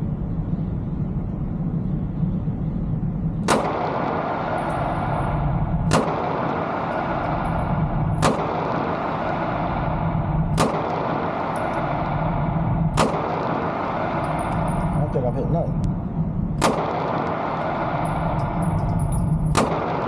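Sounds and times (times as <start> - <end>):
steady low hum: 0.0 - 20.0
pistol shots: 3.4 - 15.5, 16.6 - 20.0.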